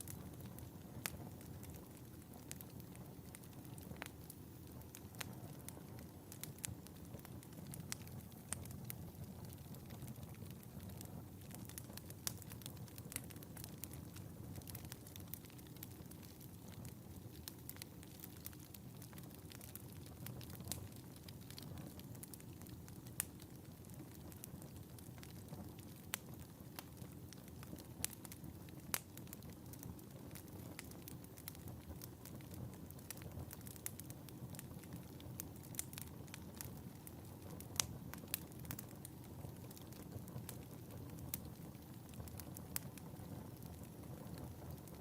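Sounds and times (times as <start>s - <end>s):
fire crackling and popping: 0.0s - 45.0s
low rumble of flames: 0.0s - 45.0s.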